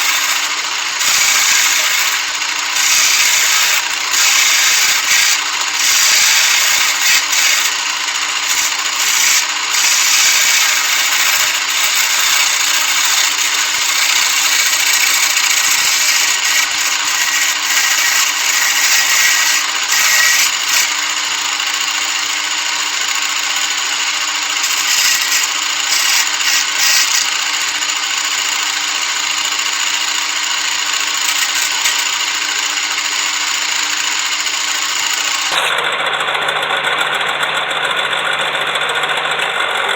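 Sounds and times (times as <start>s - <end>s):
lathe motor hum: 0.0s - 39.9s
hiss of wood being shaved: 8.5s - 20.9s, 24.6s - 27.4s.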